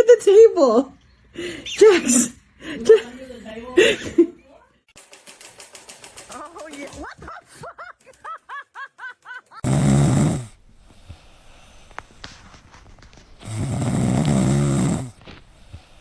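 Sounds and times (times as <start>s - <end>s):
dog snoring: 9.6s - 11.7s, 13.4s - 16.0s.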